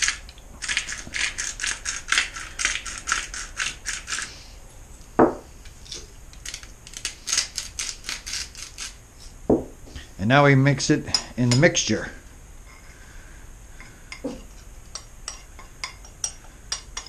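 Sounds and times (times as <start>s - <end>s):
pepper grinder grinding: 0.0s - 4.3s, 5.8s - 9.0s.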